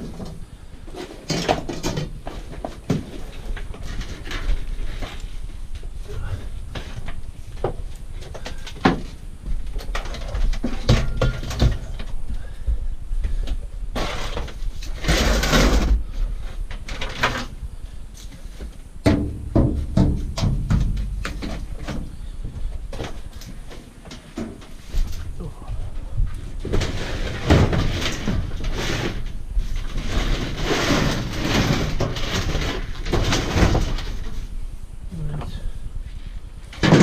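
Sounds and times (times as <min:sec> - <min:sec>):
scrap metal clattering: 0:14.0 - 0:16.1, 0:26.6 - 0:34.4.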